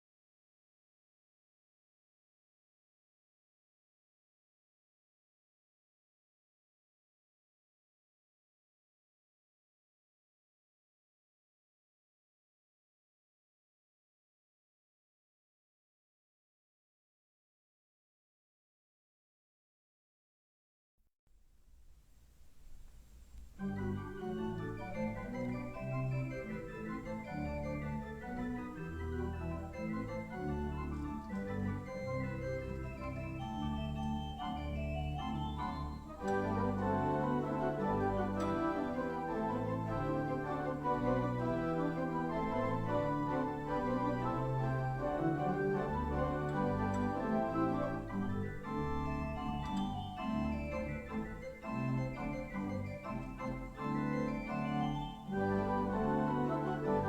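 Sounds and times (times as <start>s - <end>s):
church organ playing: 23.6s - 57.0s.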